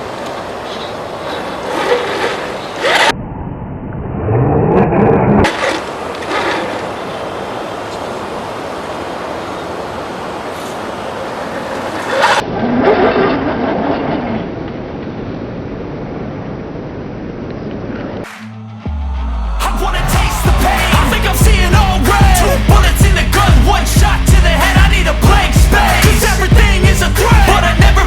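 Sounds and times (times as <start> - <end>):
noisy background: 15.2 - 28.0.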